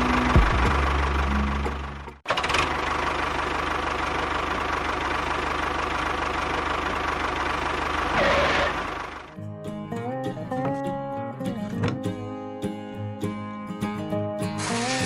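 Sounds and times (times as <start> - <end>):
small electric motor rattling: 14.6 - 15.0.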